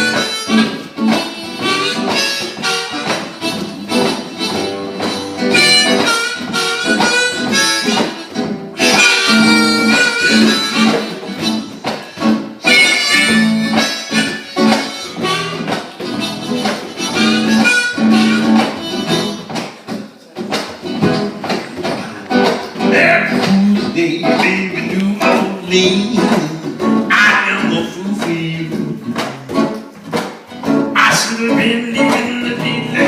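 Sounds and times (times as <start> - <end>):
reedy wind instrument melody: 0.0 - 19.5
guitar: 0.0 - 33.0
live blues band music: 0.0 - 33.0.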